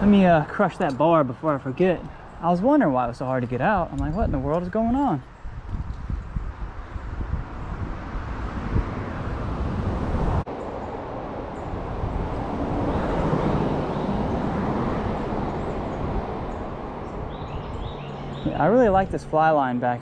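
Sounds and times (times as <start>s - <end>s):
vehicle passing by: 6.7s - 20.0s.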